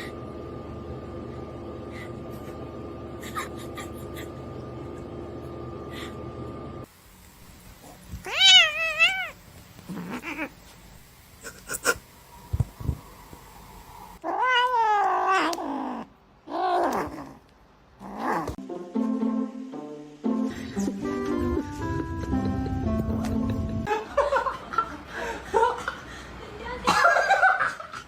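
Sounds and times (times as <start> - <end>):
cat meowing: 8.2 - 10.5, 14.2 - 16.0
music: 18.6 - 23.9.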